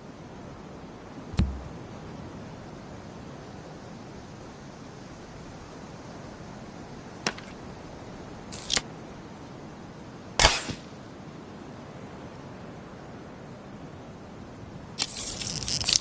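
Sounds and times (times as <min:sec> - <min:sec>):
steady hiss: 0:00.0 - 0:16.0
crossbow clicks: 0:01.4 - 0:01.7
crossbow shot snap: 0:01.4 - 0:01.8, 0:10.4 - 0:10.9
crossbow scrape: 0:15.0 - 0:16.0.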